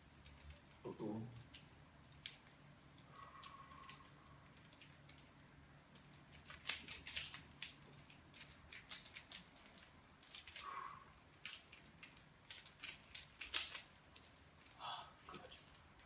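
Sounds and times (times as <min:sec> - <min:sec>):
puzzle cube clicking: 0:06.0 - 0:10.7, 0:11.3 - 0:14.8.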